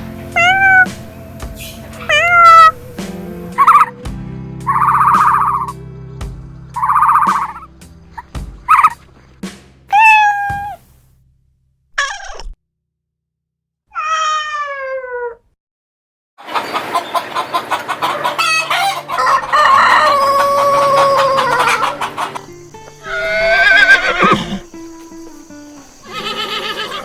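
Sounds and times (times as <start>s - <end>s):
chickens clucking: 0.0s - 4.0s, 4.7s - 5.8s, 6.7s - 9.0s, 16.4s - 27.0s
rooster crowing: 0.4s - 4.0s, 18.0s - 24.7s.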